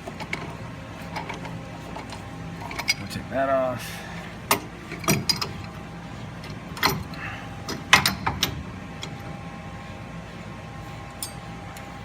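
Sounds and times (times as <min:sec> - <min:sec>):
faint steady hum: 0:00.0 - 0:12.0
pipe wrench clinking on metal: 0:02.0 - 0:03.1, 0:04.5 - 0:05.5, 0:11.2 - 0:11.4.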